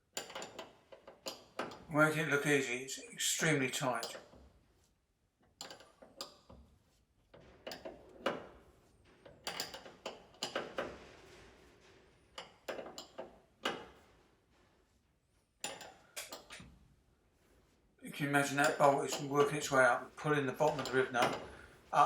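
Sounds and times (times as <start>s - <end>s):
metallic tool clicks and clanks: 20.6s - 21.6s.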